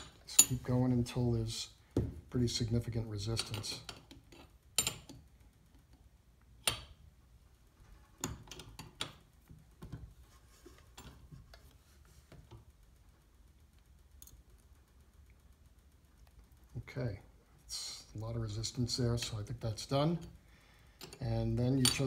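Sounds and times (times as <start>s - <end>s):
wrenches clicking on metal tool: 21.0s - 22.0s.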